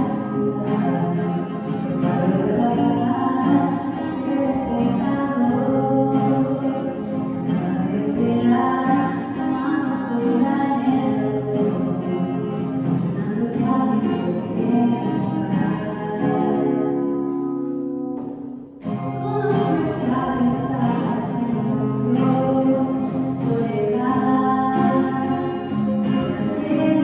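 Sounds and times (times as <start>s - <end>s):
person singing: 0.0s - 17.3s, 19.0s - 27.0s
strummed acoustic guitar: 0.0s - 27.0s.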